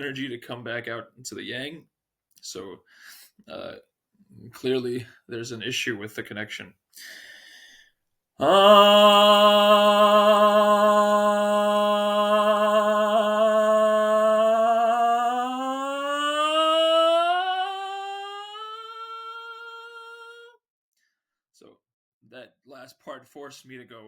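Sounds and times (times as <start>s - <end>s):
man singing long note: 8.4s - 20.4s.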